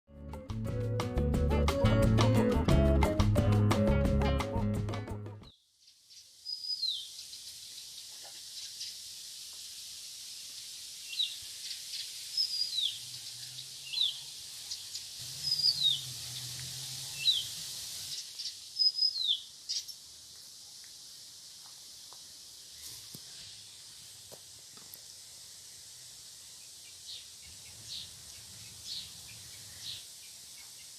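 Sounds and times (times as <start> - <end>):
steady outdoor hiss: 5.5 - 30.9
songbird high descending call: 6.4 - 7.3, 11.1 - 19.9.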